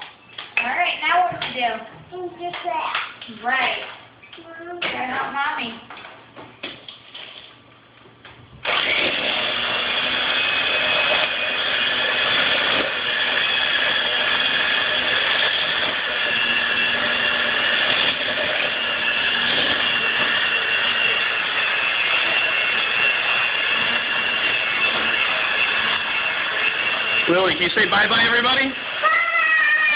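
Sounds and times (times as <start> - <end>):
electric mixer running: 8.6 - 29.9.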